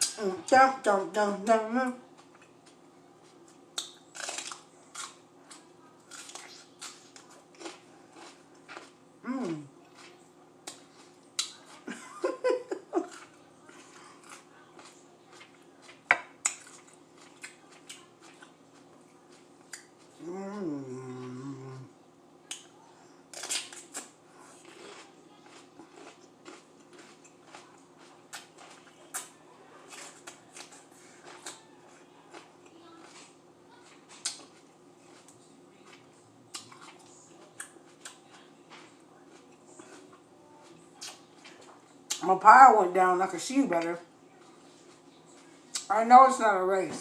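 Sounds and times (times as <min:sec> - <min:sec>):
crunching bites of peppers: 0:03.4 - 0:11.8, 0:23.3 - 0:31.7
closed-mouth hum: 0:19.3 - 0:24.7.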